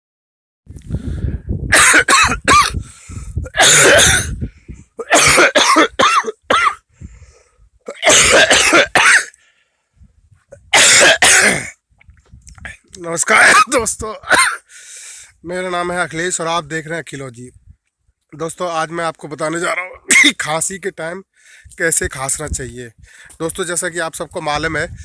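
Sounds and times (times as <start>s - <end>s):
person coughing hard: 1.7s - 2.8s, 3.4s - 4.4s, 5.0s - 6.8s, 7.8s - 9.4s, 10.5s - 11.8s, 13.3s - 14.7s, 19.5s - 20.4s.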